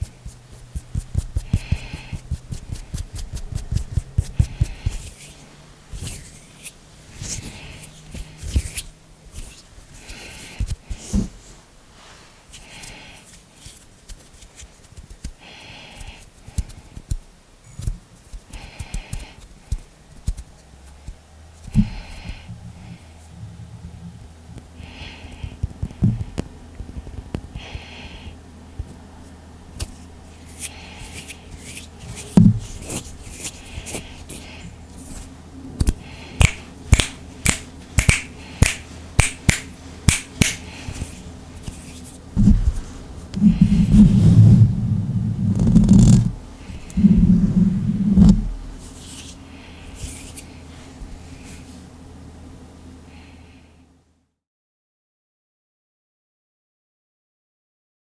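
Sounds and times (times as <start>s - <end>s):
hands rubbing: 29.8s - 49.4s
finger snaps and clicks: 35.8s - 40.6s.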